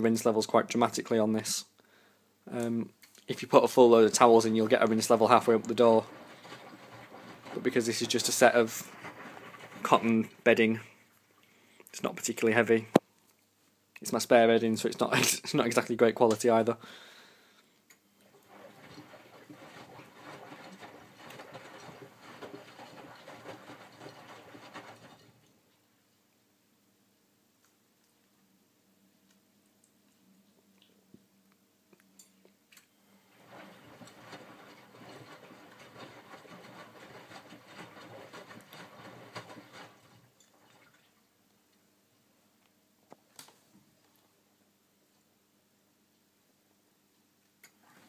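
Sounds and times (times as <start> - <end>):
wet laundry sloshing: 3.4 - 11.1, 18.2 - 25.7, 33.2 - 41.4
washing machine drum turning: 4.0 - 10.4, 18.4 - 25.4, 33.4 - 40.2.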